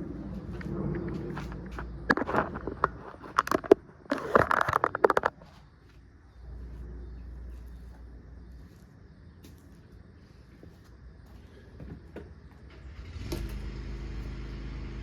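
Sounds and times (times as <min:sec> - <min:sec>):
faint low rumble: 0:00.0 - 0:04.1, 0:05.2 - 0:11.7
plastic cracking and knocking: 0:02.1 - 0:05.4.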